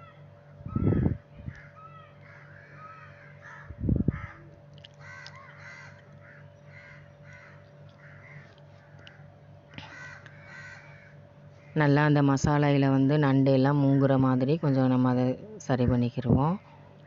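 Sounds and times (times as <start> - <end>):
crows cawing: 0.0 - 11.9
steady low hum: 0.0 - 17.0.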